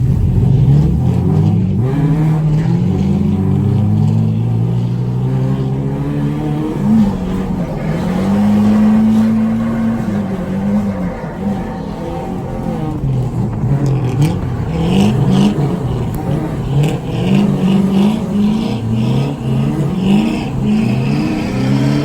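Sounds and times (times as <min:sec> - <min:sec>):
car engine revving high: 0:00.0 - 0:22.0.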